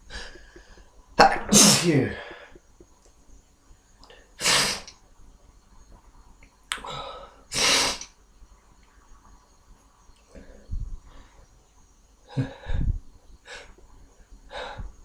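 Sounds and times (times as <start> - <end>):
man sneezing: 1.2 - 2.2.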